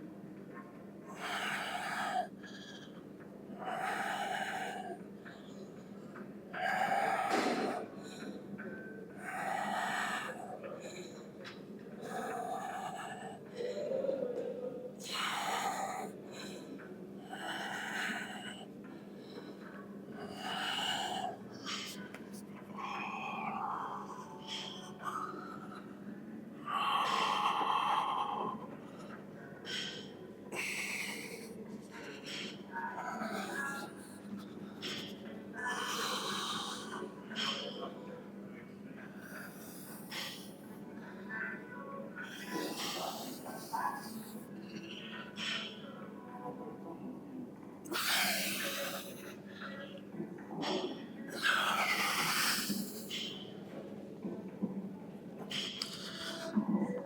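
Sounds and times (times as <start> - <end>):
person breathing hard: 1.1 - 3.0, 3.6 - 5.7, 6.6 - 8.3, 9.2 - 14.4, 15.0 - 22.1, 26.6 - 37.8, 39.2 - 40.7, 42.2 - 44.5, 47.9 - 49.4, 50.6 - 53.4, 55.5 - 56.6.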